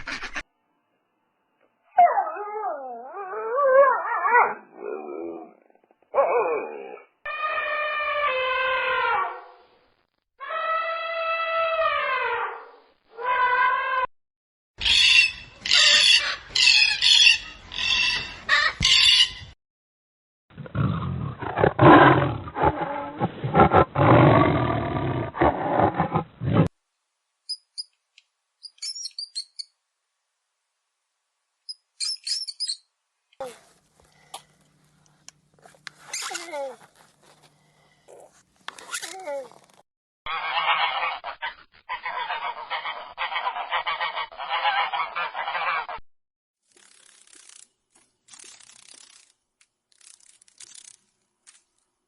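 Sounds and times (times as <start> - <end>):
big cat roaring and grunting: 20.6 - 26.7.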